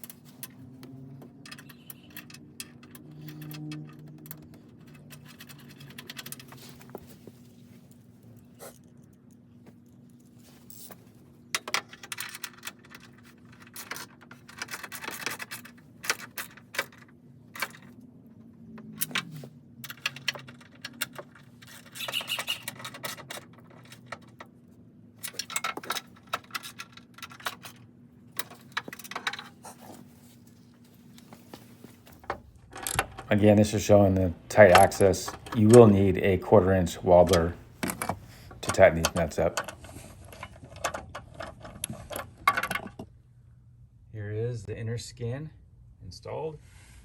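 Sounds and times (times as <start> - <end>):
steady low hum: 23.3 - 47.0
metal hardware clinking: 32.2 - 42.9.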